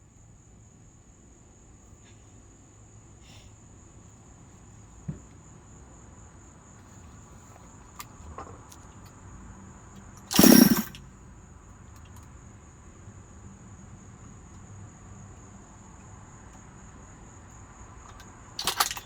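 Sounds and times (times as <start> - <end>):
chainsaw engine turning over: 10.3 - 11.0, 18.6 - 19.0.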